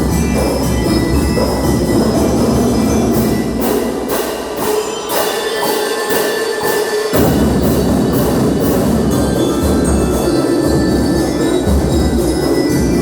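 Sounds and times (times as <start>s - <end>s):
bell lyres ringing a melody: 0.0s - 13.0s
snare drums: 0.0s - 13.0s
bass drums: 7.2s - 13.0s.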